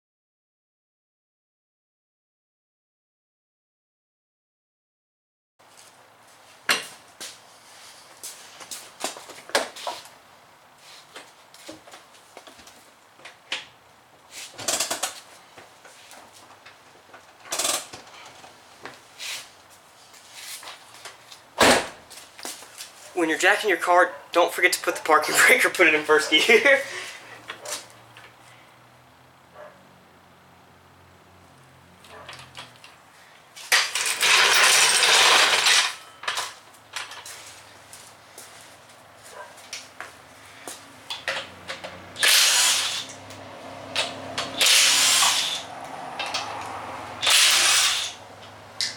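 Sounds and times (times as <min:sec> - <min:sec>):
tools clattering and scraping: 0:33.6 - 0:38.1.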